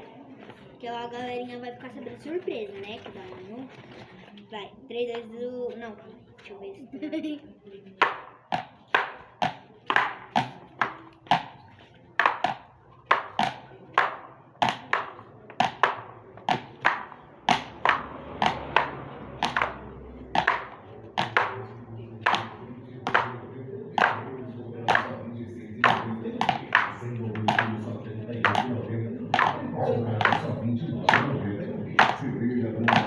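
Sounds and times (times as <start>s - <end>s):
egg-carton castanets clacking: 8.0s - 21.6s, 22.2s - 23.4s, 24.0s - 24.3s, 25.8s - 31.4s, 32.0s - 33.0s
pencils tapping on notebook: 8.0s - 23.4s.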